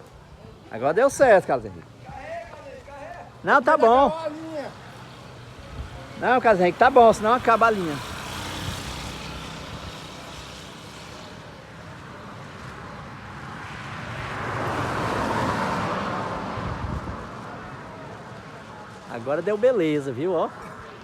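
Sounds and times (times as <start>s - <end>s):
wind buffeting microphone: 5.4s - 6.2s, 14.0s - 18.9s.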